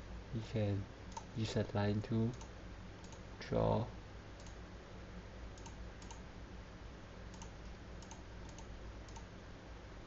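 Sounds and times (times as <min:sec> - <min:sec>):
steady low hum: 0:00.0 - 0:10.0
computer mouse clicking: 0:01.1 - 0:01.3, 0:02.3 - 0:03.2, 0:04.4 - 0:04.6, 0:05.6 - 0:06.2, 0:07.3 - 0:09.3.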